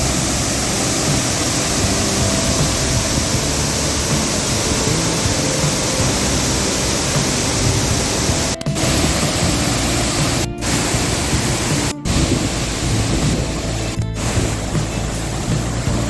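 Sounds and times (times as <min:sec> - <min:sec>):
faint music: 0:00.0 - 0:16.0
waterfall rushing: 0:00.0 - 0:16.0.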